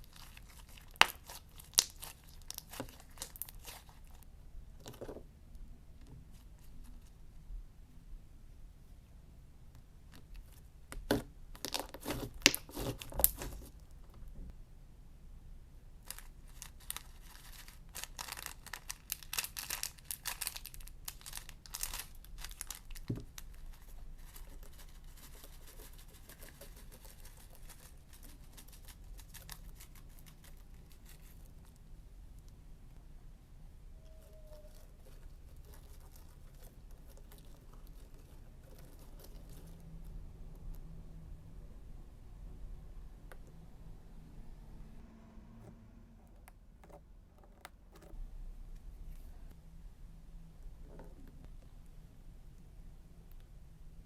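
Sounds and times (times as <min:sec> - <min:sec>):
slime crackling and popping: 0:00.0 - 0:04.1, 0:11.0 - 0:13.6
hands squeezing slime: 0:00.0 - 0:04.2, 0:16.0 - 0:31.8.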